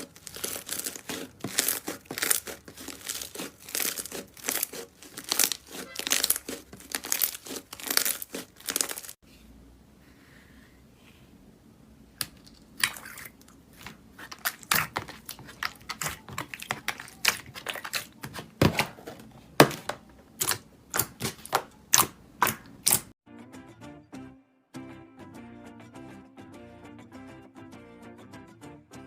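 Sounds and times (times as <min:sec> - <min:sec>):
slime crackling pops: 0:20.4 - 0:23.1.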